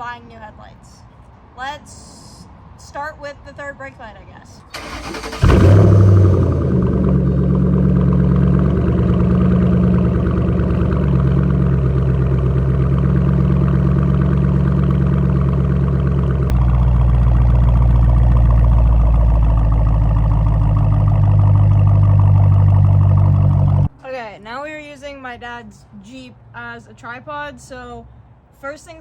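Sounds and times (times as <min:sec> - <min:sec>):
car engine running: 0:04.8 - 0:24.0.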